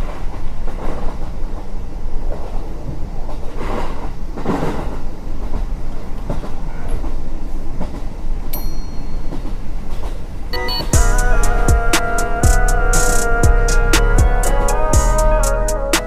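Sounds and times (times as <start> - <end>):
brief high tones: 10.5 - 13.9
vehicle rumble: 10.9 - 16.0.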